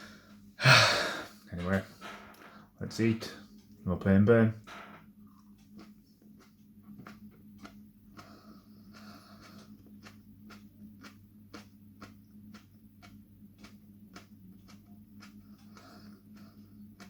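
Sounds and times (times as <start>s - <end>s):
low hum: 0.0s - 17.0s
wet chewing mouth sounds: 5.3s - 17.0s.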